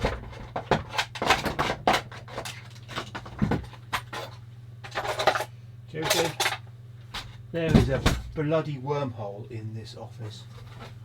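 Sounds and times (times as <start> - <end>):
objects clattering and knocking: 0.0 - 8.4
steady low hum: 0.0 - 11.0.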